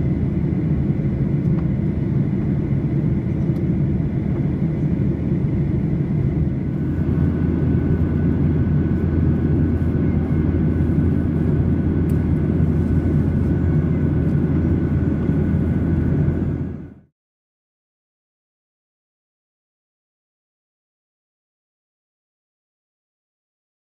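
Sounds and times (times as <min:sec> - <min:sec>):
airflow: 0:00.0 - 0:17.0
faint steady whine: 0:00.0 - 0:17.1
low rumble of jet engines: 0:00.0 - 0:17.1.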